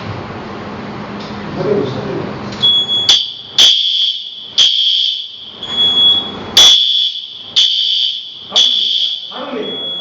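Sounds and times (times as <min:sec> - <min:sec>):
pulsing high-pitched fire alarm: 0:02.6 - 0:10.0.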